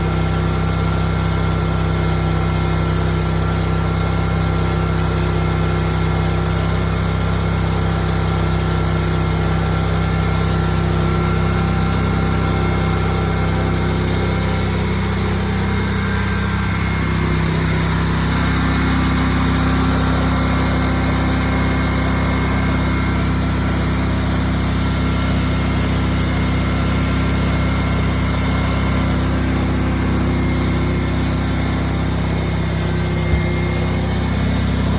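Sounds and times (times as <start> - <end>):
lawn mower engine running: 0.0 - 34.9.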